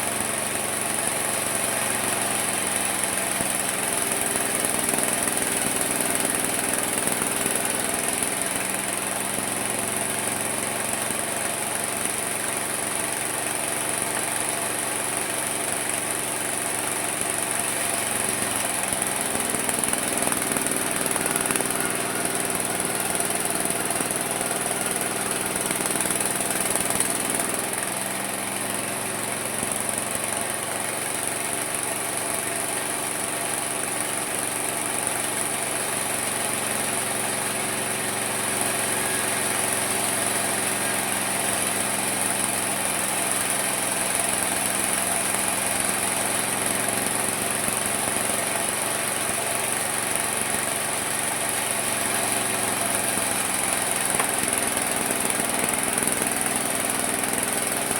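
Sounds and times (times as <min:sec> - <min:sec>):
sawmill saw cutting wood: 0:00.0 - 0:57.9.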